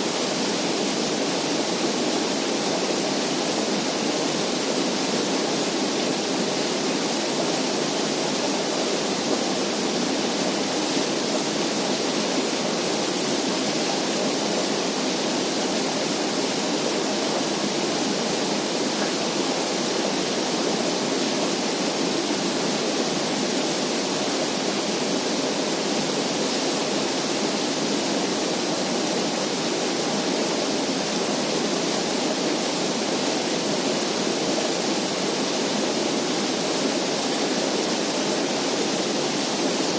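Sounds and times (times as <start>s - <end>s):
rushing water: 0.0s - 39.9s.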